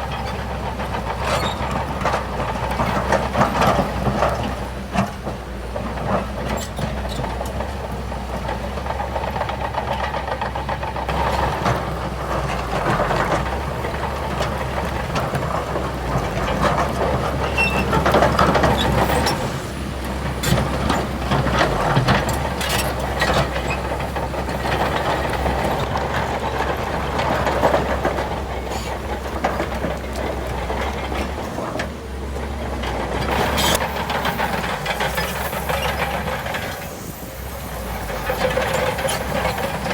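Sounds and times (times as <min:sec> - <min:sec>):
bulldozer engine running: 0:00.0 - 0:39.9.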